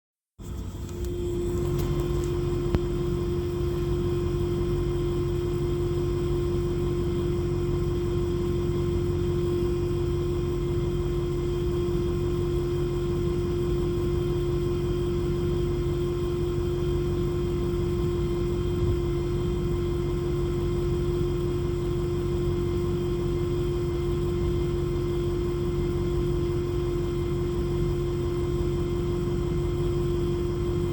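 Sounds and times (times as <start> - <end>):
low engine rumble: 0.4 - 7.0
fuel pump whine: 0.4 - 30.9.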